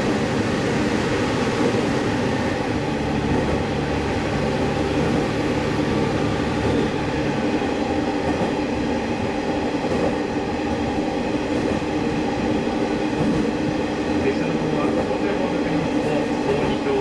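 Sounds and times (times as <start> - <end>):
diesel railcar engine running: 0.0 - 13.5
wheels rumbling on rails: 0.0 - 17.0.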